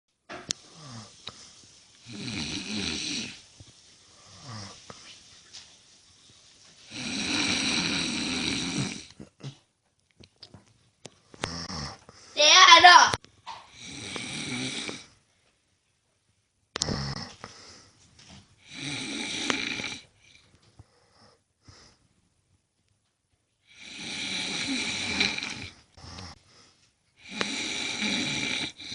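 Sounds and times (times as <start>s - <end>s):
quiet breathing: 0.5s - 9.6s, 11.1s - 12.4s, 16.8s - 22.3s, 23.6s - 28.9s
man snoring: 2.1s - 3.4s, 4.3s - 4.8s, 6.9s - 9.2s, 11.4s - 12.0s, 13.7s - 15.2s, 16.8s - 17.4s, 18.6s - 20.1s, 23.7s - 26.4s, 27.2s - 28.9s.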